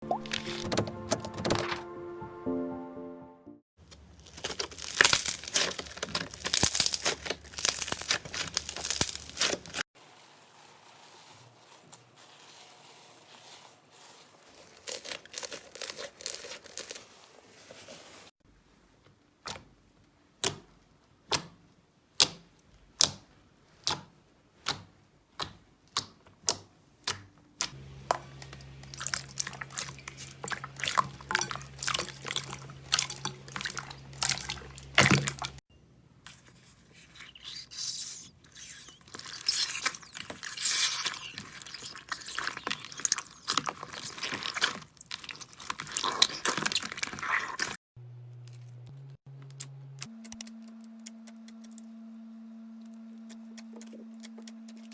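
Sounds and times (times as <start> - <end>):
slime popping and crackling: 3.9 - 9.9, 14.6 - 17.1, 28.1 - 35.6, 36.3 - 47.8.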